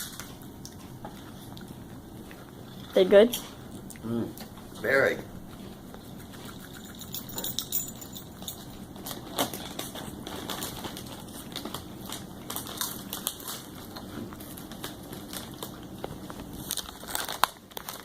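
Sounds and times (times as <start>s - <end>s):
potato chips crunching: 9.0s - 18.0s.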